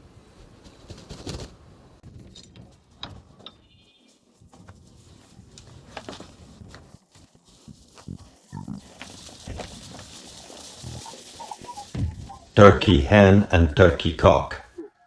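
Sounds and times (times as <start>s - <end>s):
farm animal calls: 7.5s - 13.6s.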